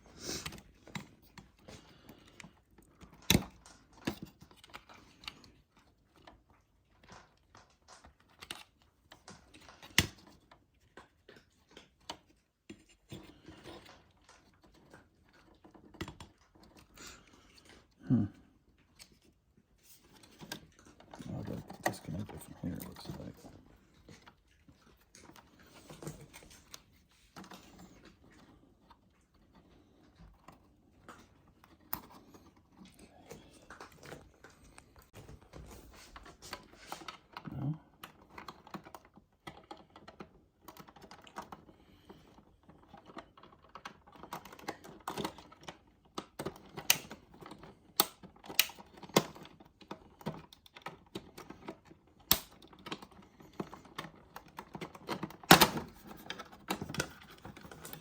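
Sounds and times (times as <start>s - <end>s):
plastic clips clicking and snapping: 43.0s - 58.0s.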